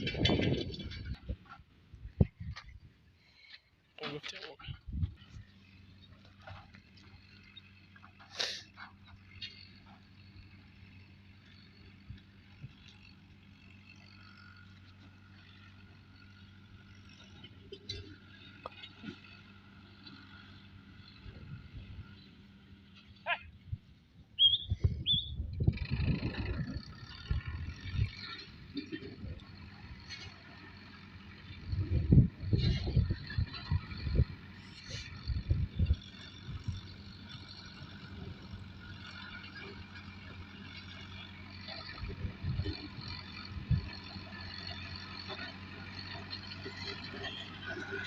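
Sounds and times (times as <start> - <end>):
tractor engine humming: 0.0 - 48.0
low rumbling: 23.4 - 30.0
bird chirps: 24.4 - 25.4.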